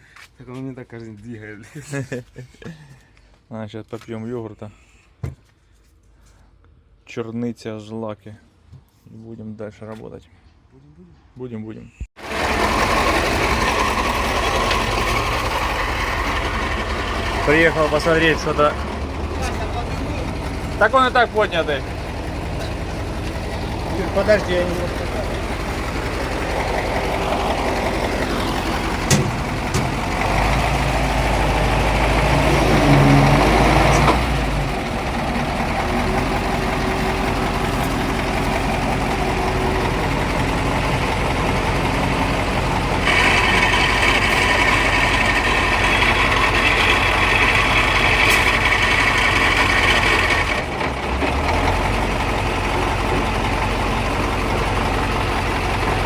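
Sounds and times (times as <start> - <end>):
diesel truck engine running: 12.2 - 56.0.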